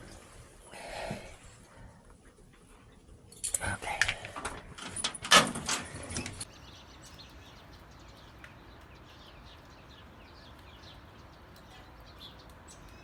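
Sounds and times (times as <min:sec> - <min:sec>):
small birds chirping: 0:05.8 - 0:13.0.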